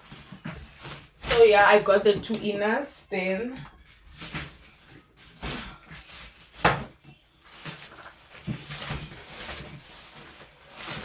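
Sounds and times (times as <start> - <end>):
packaging rustling: 0.0 - 1.5, 3.8 - 11.0.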